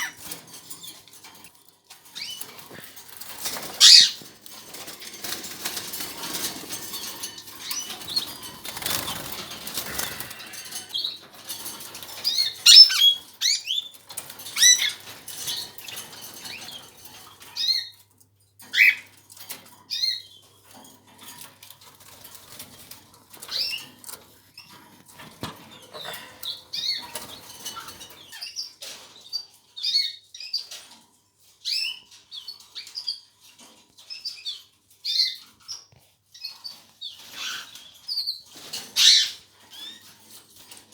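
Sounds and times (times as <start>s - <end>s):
canaries chirping: 0.0s - 40.9s
wings flapping: 2.4s - 12.9s.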